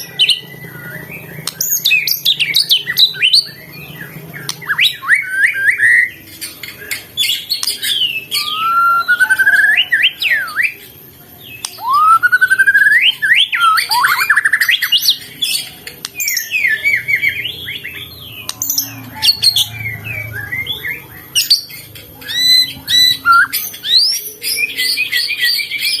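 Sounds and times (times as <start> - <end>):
songbird singing varied song: 7.2 - 26.0.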